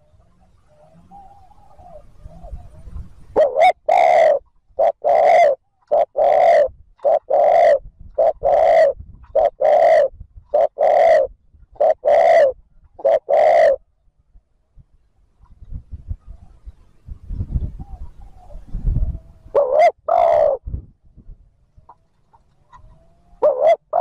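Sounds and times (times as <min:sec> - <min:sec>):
dove cooing: 0:00.0 - 0:13.8, 0:17.4 - 0:20.6, 0:21.8 - 0:24.0.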